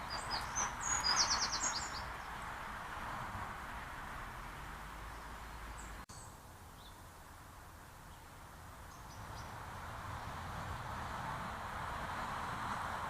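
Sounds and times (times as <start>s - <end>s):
faint high bird chirps: 0.0s - 2.2s.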